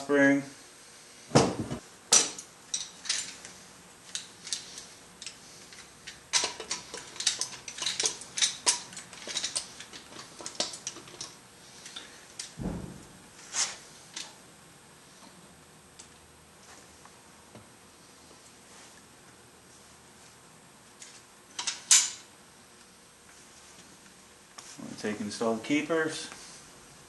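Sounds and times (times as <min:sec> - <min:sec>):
dull thump: 0:01.3 - 0:01.8, 0:12.6 - 0:13.2.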